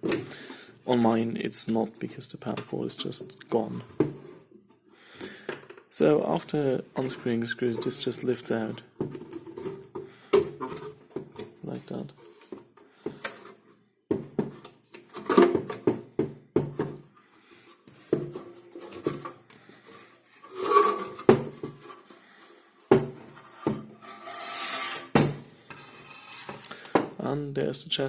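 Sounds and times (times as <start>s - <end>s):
metal scraping: 19.9s - 22.8s, 23.4s - 26.7s.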